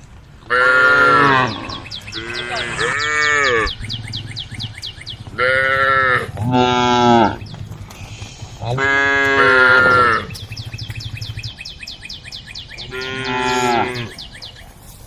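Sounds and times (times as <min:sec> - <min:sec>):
cows mooing: 0:00.5 - 0:10.6, 0:12.8 - 0:14.2.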